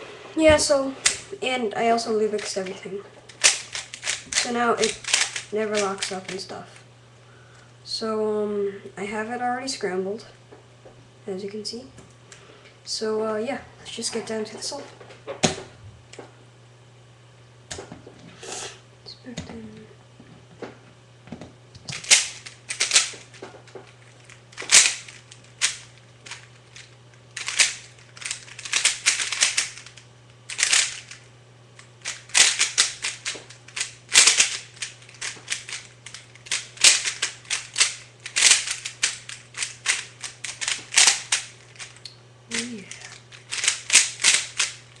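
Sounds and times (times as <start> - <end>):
puzzle cube clicking: 3.3 - 6.4, 27.4 - 31.2, 32.0 - 41.5, 43.5 - 44.8.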